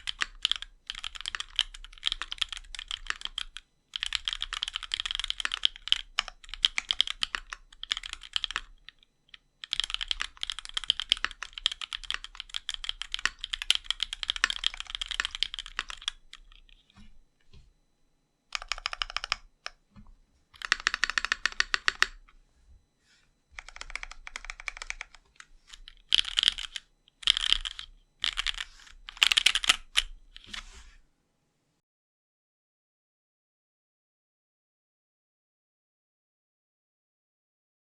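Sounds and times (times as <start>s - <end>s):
mechanical keyboard keystroke clacks: 0.0s - 8.7s, 9.6s - 16.2s, 20.6s - 22.2s, 25.8s - 30.1s.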